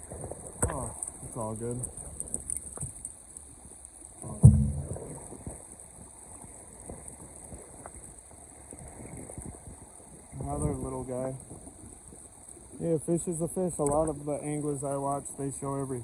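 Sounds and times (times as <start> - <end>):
loud short thump: 4.3 - 5.2
small scattered clicks: 13.7 - 14.2.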